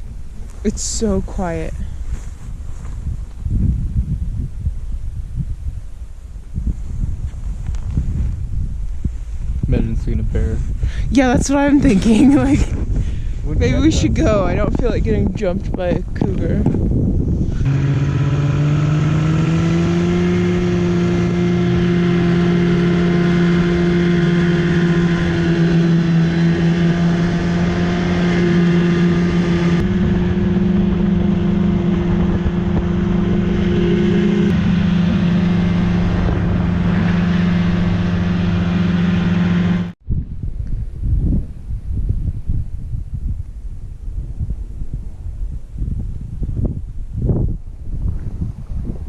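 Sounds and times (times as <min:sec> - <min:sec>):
snowmobile engine: 0:17.3 - 0:40.0.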